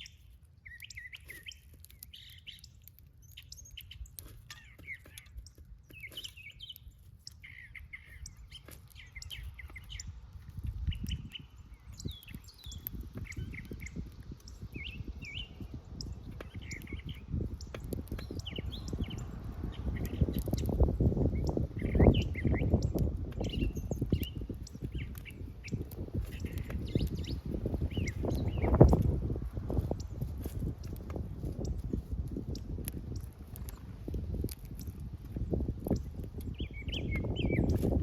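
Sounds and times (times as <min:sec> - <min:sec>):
small birds chirping: 0:00.0 - 0:38.0.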